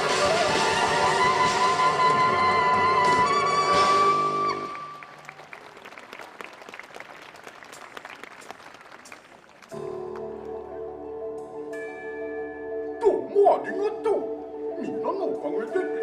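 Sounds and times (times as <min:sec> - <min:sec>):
audience applause: 0:01.8 - 0:09.8
soft music with held chords: 0:09.8 - 0:16.0.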